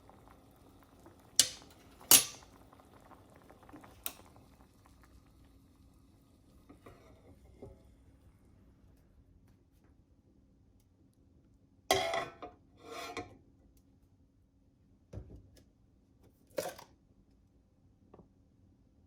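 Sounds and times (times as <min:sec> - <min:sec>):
utensil scraping a dish: 0:11.9 - 0:13.3.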